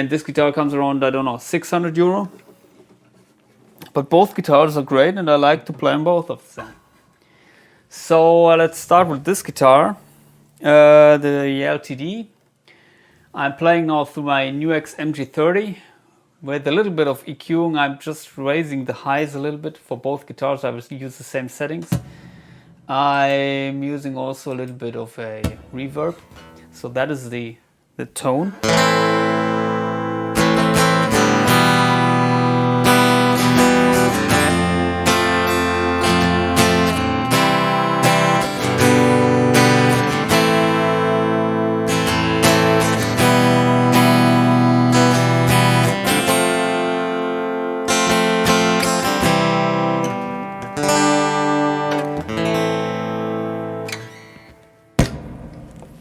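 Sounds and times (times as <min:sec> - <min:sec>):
electric acoustic guitar strummed chords: 0:28.6 - 0:55.4.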